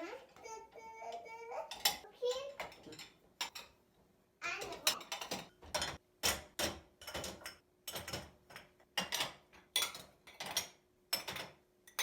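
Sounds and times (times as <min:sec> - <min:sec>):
household objects knocking and clattering: 0:00.3 - 0:03.8, 0:04.5 - 0:12.0.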